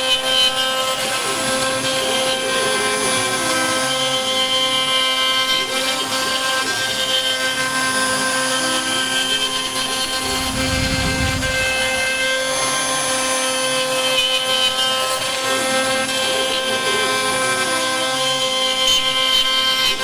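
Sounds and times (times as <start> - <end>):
router spindle whine: 0.0 - 20.0
stepper motors whining: 8.6 - 12.7
low rumble: 10.0 - 12.4.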